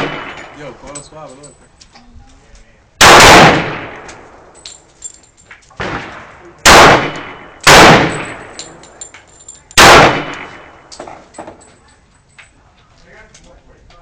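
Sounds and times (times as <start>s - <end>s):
loud pistol shots with echo: 0.0s - 0.5s, 3.0s - 4.4s, 5.8s - 8.6s, 9.8s - 10.9s
quieter pistol shot: 3.0s - 4.3s, 5.8s - 8.6s, 9.8s - 10.7s.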